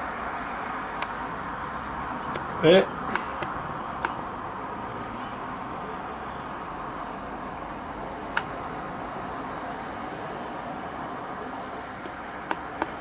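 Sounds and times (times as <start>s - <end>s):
distant city hiss: 0.0s - 13.0s
sharp click: 3.1s - 4.2s.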